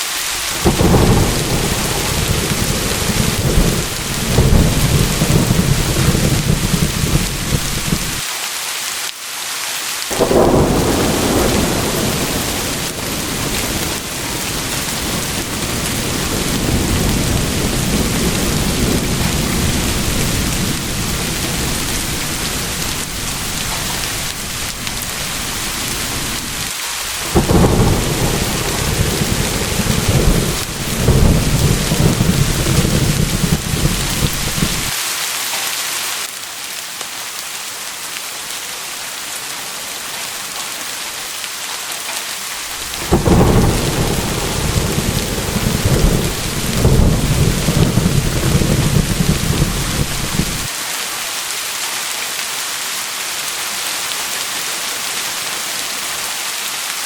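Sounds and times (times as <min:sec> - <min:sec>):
steady rain: 0:00.0 - 0:57.0
rolling thunder: 0:00.3 - 0:08.2, 0:10.1 - 0:34.9, 0:42.6 - 0:50.7.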